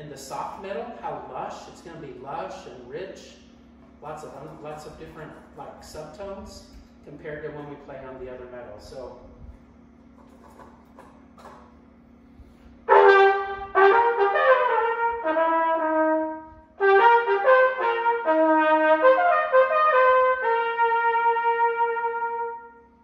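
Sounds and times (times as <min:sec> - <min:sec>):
trumpet playing a tune: 0:12.9 - 0:23.0.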